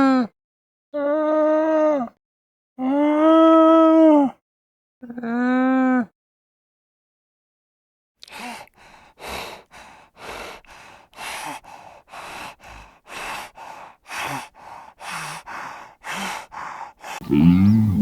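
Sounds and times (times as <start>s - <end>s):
animal breathing heavily: 8.5s - 18.0s.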